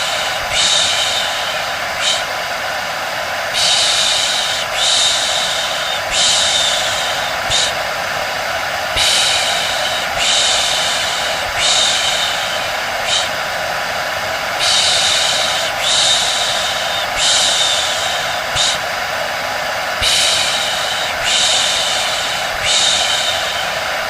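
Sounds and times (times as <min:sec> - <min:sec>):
hair dryer running: 0:00.0 - 0:24.0
person shushing: 0:20.0 - 0:23.9.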